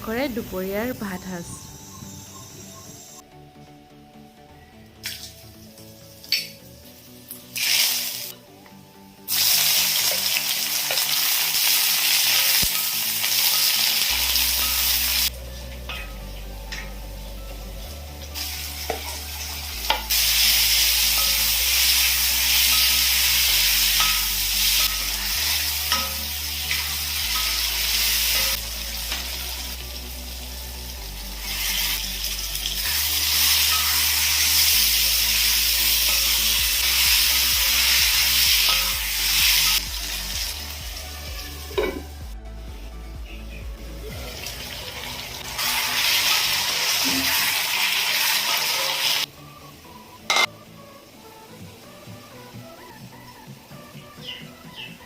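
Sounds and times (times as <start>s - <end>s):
food sizzling in oil: 5.0s - 8.4s, 9.3s - 16.0s, 18.2s - 42.0s, 44.2s - 49.3s.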